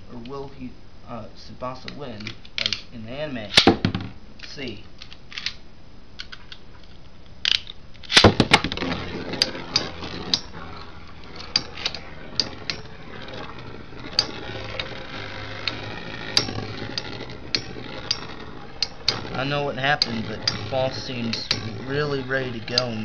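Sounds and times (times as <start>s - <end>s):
spinning tops clacking together: 7.5s - 23.0s
spinning tops whirring: 8.1s - 23.0s.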